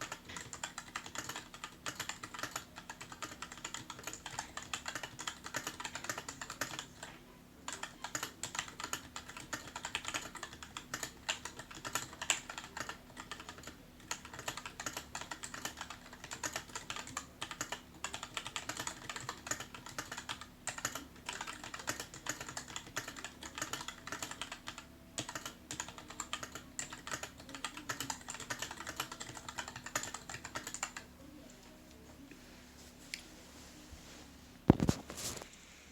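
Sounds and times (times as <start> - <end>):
mechanical keyboard typing: 0.0 - 7.1, 7.7 - 31.1.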